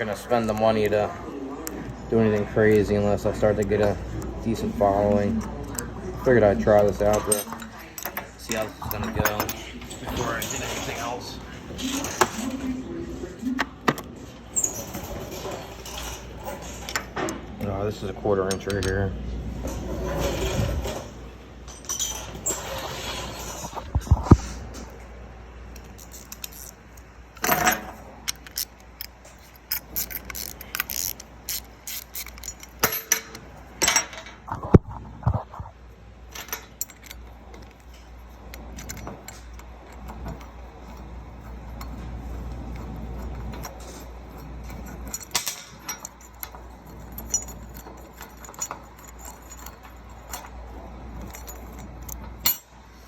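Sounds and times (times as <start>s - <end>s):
metal tools and parts clinking: 0.0s - 12.7s, 13.6s - 53.0s
low steady hum: 0.0s - 53.0s.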